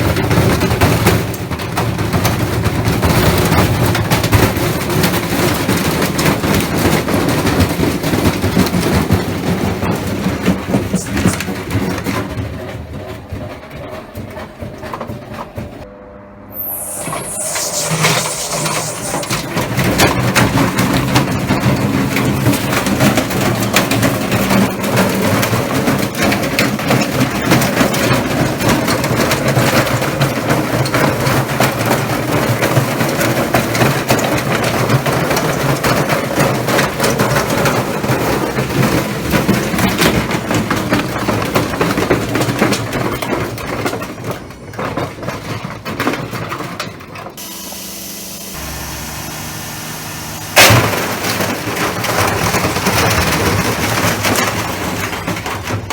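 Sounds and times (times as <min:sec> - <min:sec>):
banging and rattling in drum: 0:00.0 - 0:15.9, 0:17.0 - 0:47.4, 0:50.6 - 0:55.9
washing machine motor hum: 0:15.9 - 0:24.2, 0:47.4 - 0:55.9.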